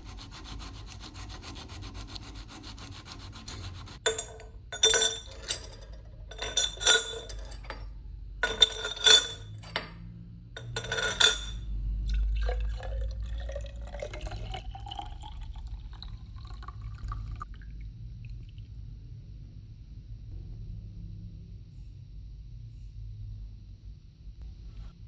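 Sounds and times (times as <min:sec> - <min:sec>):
scraping strokes: 0:00.0 - 0:10.0
liquid pouring into glass: 0:12.0 - 0:17.8.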